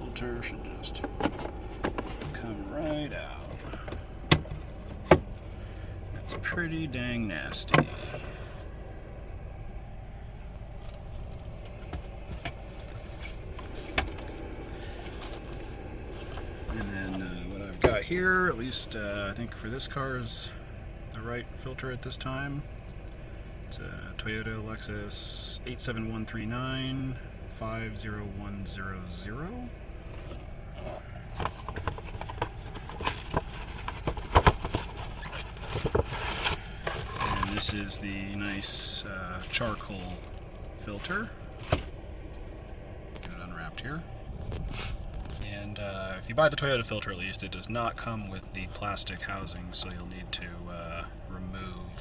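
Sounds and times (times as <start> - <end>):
car engine idling: 0.0 - 52.0
packaging clicks and knocks: 1.0 - 2.4, 31.3 - 37.8.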